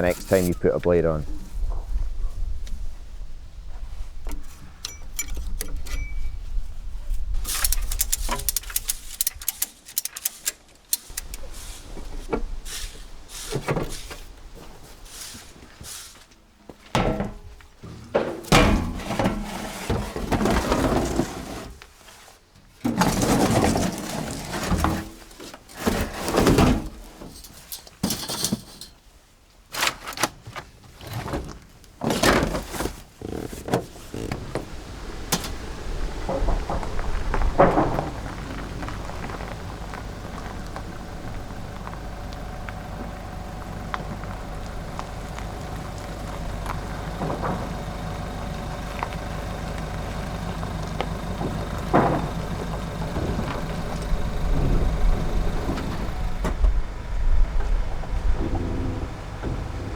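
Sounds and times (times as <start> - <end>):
engine starting and idling: 11.0 - 12.8, 33.2 - 59.9
thunks and knocks: 16.8 - 21.2, 32.0 - 59.9.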